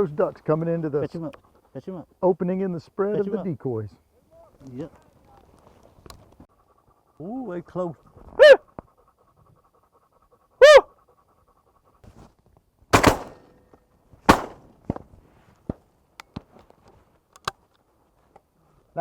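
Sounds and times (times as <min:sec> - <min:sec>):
metallic gun clicks: 0:13.0 - 0:13.6, 0:14.3 - 0:14.6
shotgun shots: 0:13.0 - 0:13.6, 0:14.3 - 0:14.7.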